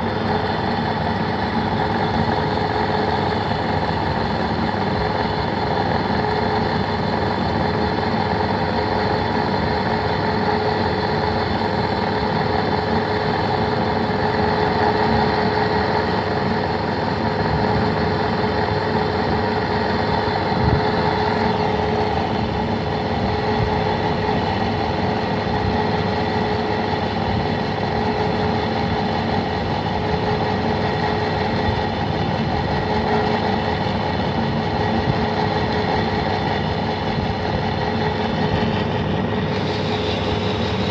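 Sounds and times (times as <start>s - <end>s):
lathe humming and whining: 0.0s - 40.9s.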